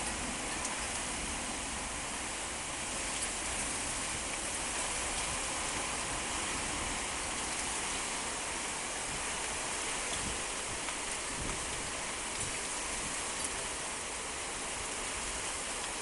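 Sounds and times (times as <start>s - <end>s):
heavy rain pouring: 0.0s - 16.0s
strong wind: 3.5s - 13.2s.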